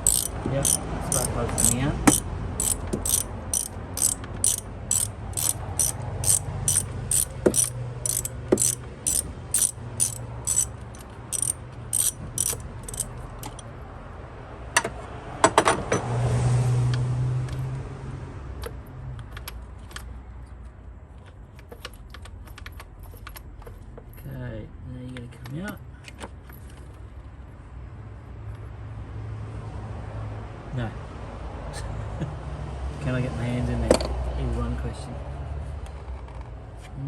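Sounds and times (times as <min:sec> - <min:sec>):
tools knocking: 0:00.0 - 0:10.7, 0:11.3 - 0:13.6
ratchet wrench clicking: 0:00.0 - 0:13.7.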